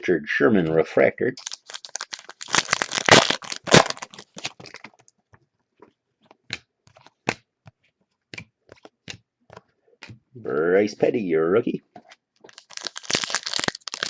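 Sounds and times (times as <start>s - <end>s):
wrappers crinkling: 1.4s - 5.0s, 12.4s - 14.0s.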